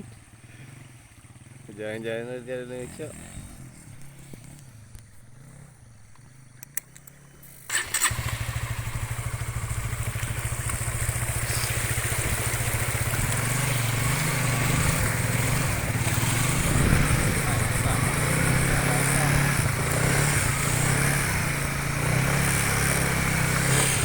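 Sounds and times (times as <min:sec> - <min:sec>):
small motorcycle engine running: 0:00.0 - 0:24.0.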